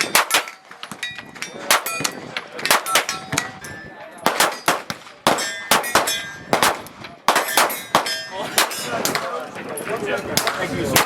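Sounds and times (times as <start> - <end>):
pistol shots: 0.0 - 0.6, 1.7 - 3.5, 4.2 - 9.3
steel targets clanging: 0.0 - 3.9, 4.5 - 6.5, 7.3 - 9.4.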